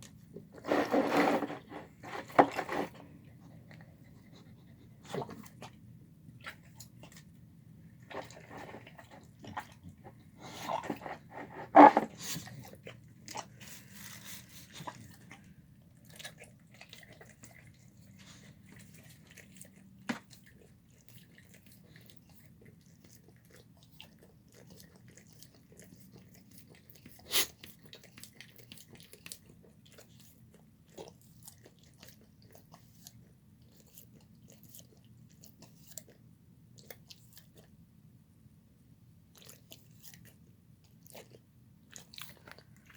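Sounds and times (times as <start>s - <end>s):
dog chewing food: 0.0s - 37.9s, 39.3s - 42.9s.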